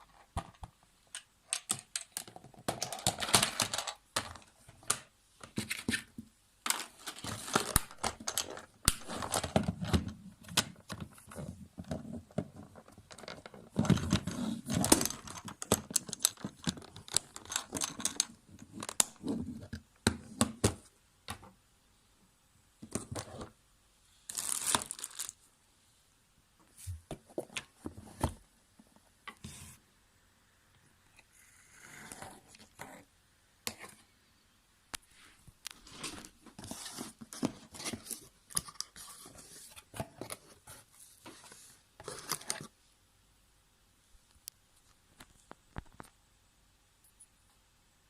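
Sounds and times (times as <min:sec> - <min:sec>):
packaging tearing and rustling: 0:24.3 - 0:25.4.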